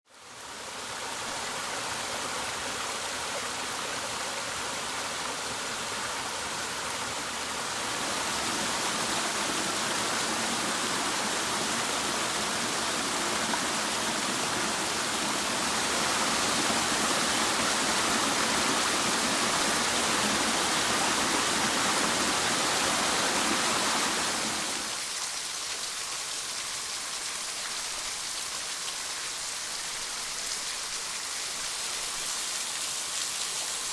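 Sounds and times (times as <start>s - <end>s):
small waterfall rushing: 0.1s - 33.9s.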